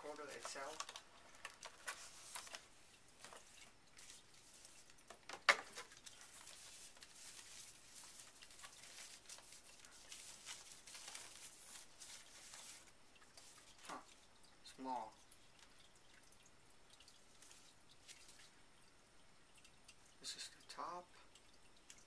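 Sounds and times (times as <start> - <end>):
packaging rustling and crinkling: 0.0 - 14.2.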